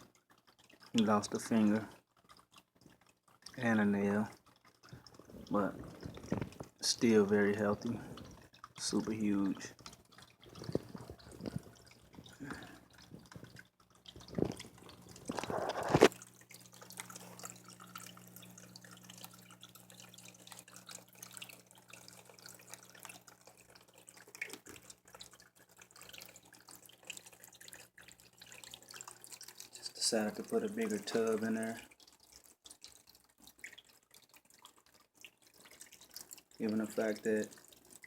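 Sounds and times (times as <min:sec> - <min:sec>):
small waterfall trickling and dripping: 0:00.0 - 0:38.0
low steady hum: 0:03.4 - 0:24.4.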